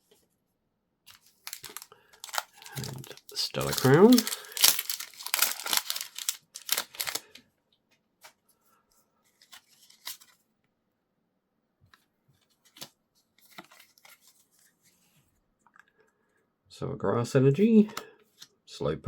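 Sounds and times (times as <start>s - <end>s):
foil wrapper crinkling: 1.1s - 7.4s.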